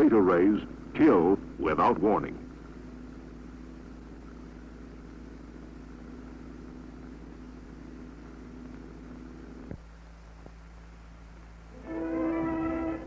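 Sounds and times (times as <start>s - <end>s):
constant hum: 0.0s - 13.0s
low mechanical drone: 0.0s - 13.0s.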